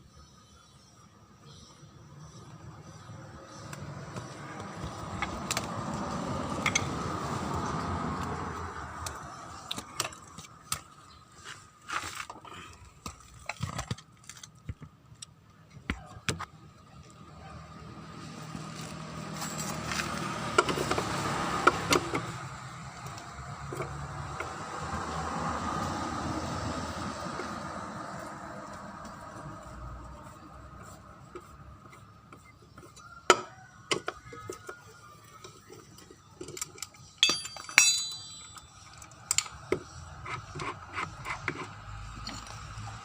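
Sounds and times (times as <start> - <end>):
metal clinks of tools and parts: 36.4 - 39.6.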